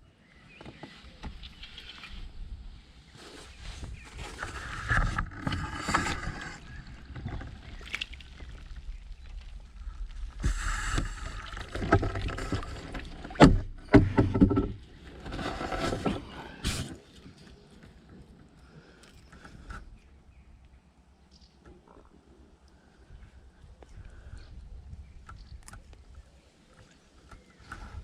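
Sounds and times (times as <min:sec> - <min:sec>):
water splashing and sloshing: 0:03.4 - 0:17.4.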